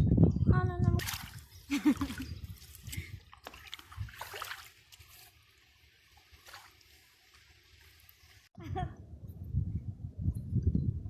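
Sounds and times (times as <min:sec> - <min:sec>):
paddle splashing water: 0:03.3 - 0:08.2.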